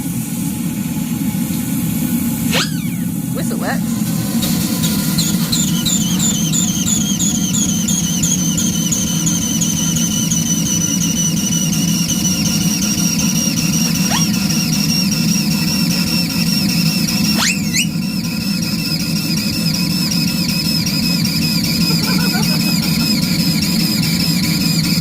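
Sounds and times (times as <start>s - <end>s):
low steam rush: 0.0s - 2.5s
short rising whistle: 2.4s - 3.2s, 4.4s - 25.0s
steam engine whistling squeal: 2.4s - 3.2s, 3.9s - 25.0s.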